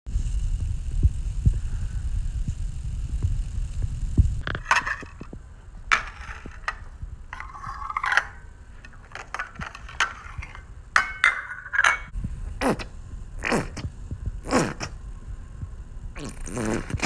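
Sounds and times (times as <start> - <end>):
objects scraping and clattering: 4.4 - 12.2.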